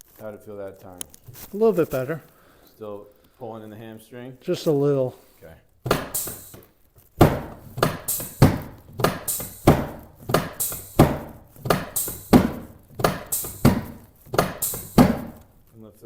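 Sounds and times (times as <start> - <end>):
sharp ringing thumps: 5.9 - 6.6, 7.2 - 15.4.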